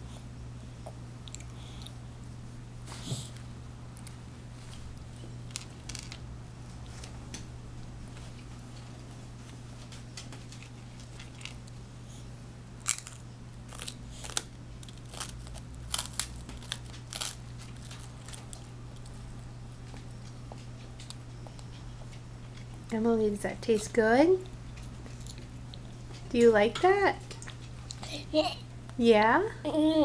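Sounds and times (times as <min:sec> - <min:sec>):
baby eating finger food: 0:00.0 - 0:02.1
steady low hum: 0:00.0 - 0:30.0.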